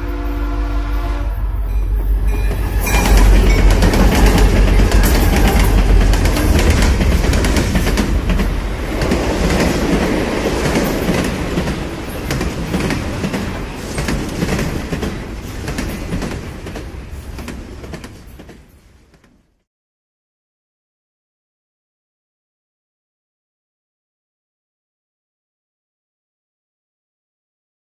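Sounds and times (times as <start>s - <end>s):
train wheels clattering on rails: 1.6s - 19.6s.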